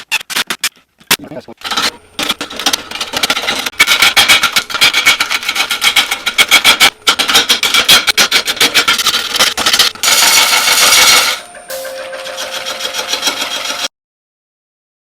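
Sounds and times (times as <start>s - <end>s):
lathe tool cutting spinning log: 1.7s - 13.9s.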